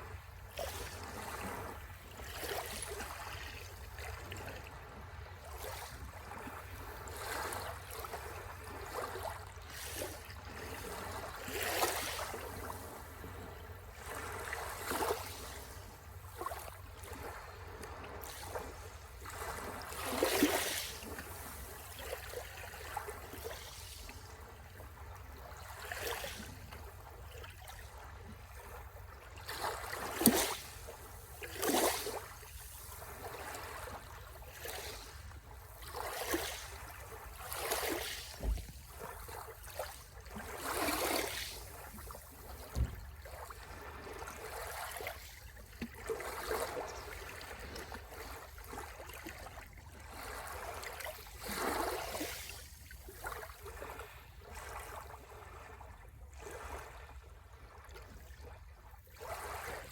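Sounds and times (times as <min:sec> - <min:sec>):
sea waves splashing on shore: 0:06.7 - 0:24.5.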